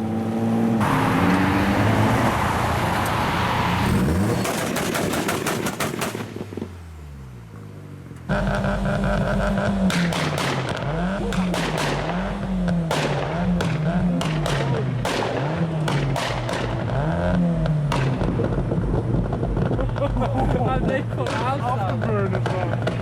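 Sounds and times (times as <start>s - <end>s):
car engine revving: 0.0s - 23.0s
exhaust pops and bangs: 4.2s - 6.8s, 8.3s - 23.0s.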